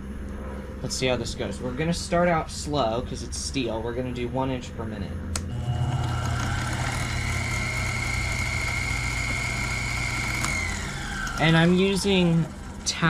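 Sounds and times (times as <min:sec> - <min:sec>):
mill spindle motor whine: 0:05.3 - 0:13.0.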